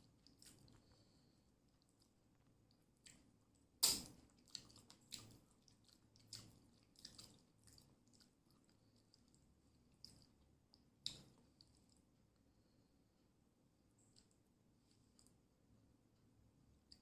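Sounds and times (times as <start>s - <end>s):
person chewing: 0.0s - 12.0s
mouth clicks and smacks: 2.7s - 12.0s.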